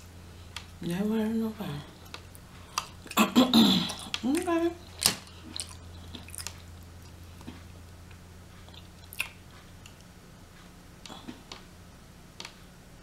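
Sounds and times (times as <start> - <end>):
mouth chewing and biting: 2.0 - 7.7, 8.6 - 10.1
wet mouth clicks and smacks: 3.9 - 7.1, 8.7 - 10.1.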